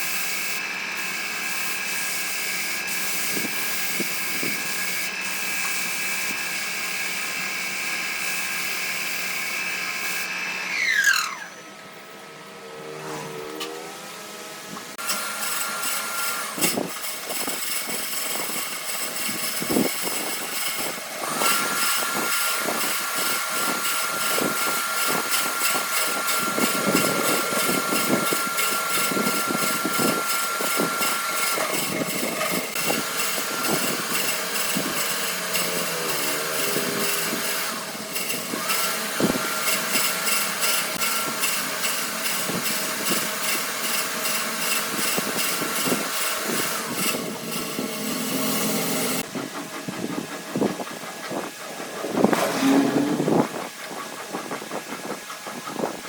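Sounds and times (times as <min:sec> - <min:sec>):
power tool whining: 0:00.0 - 0:56.0
knocks and scrapes: 0:52.2 - 0:53.6.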